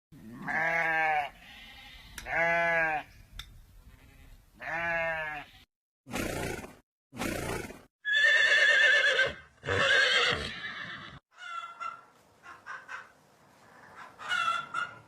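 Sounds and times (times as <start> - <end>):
sheep bleating: 0.2 - 3.1, 3.9 - 5.7.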